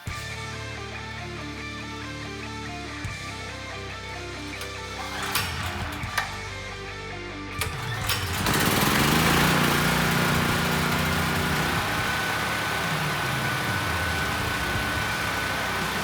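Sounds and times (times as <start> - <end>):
generator engine starting and running: 4.0 - 16.0
clicks: 4.5 - 6.5, 7.6 - 12.1.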